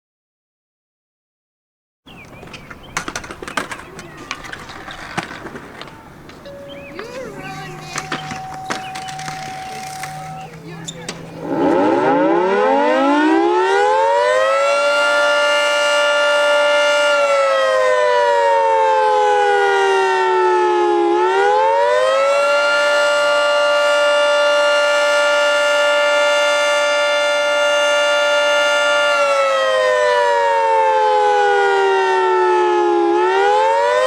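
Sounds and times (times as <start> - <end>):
warning siren wailing: 3.5 - 34.0.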